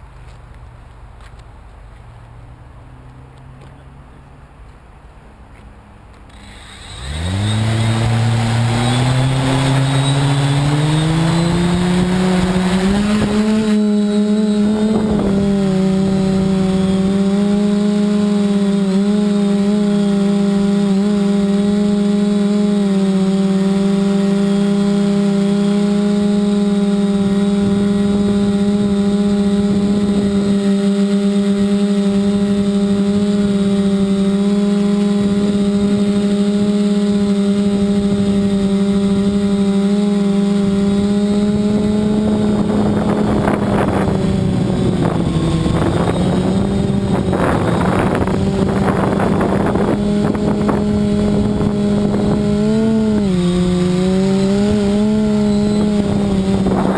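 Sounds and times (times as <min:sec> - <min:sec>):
drone motors humming: 0:06.1 - 0:56.9
wind buffeting microphone: 0:07.5 - 0:17.6, 0:40.9 - 0:56.9.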